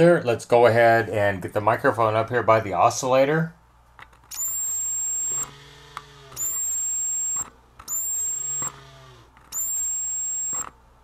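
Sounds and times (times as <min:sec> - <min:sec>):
high-pitched electronic whine: 0:04.4 - 0:05.5, 0:06.4 - 0:08.9, 0:09.5 - 0:10.7.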